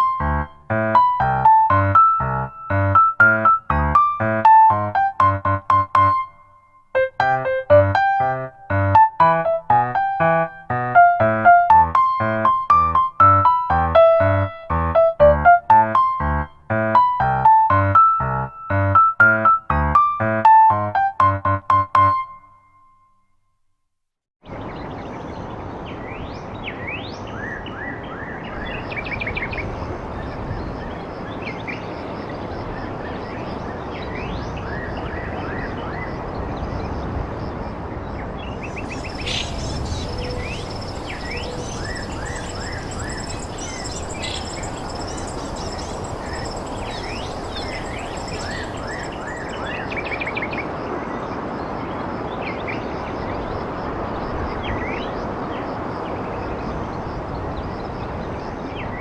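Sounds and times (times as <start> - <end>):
rushing background noise: 36.6 - 52.2
small birds chirping: 38.4 - 50.8.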